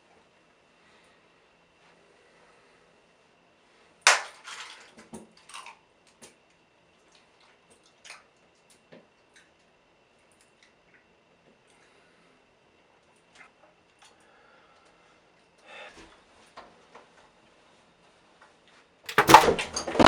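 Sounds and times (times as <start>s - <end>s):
clattering: 19.1s - 20.0s.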